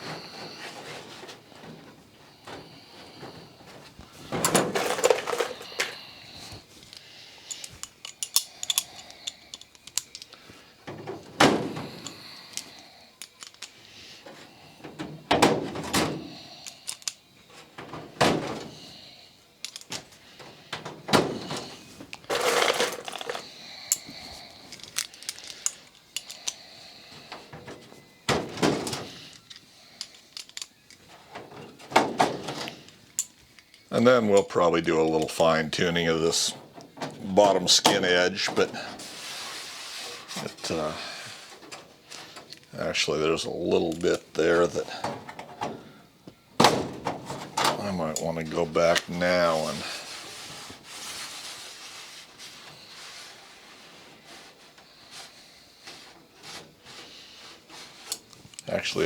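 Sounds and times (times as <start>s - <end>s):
metallic handling clatter: 2.4s - 6.0s, 6.8s - 13.8s, 14.8s - 18.8s, 19.5s - 34.6s.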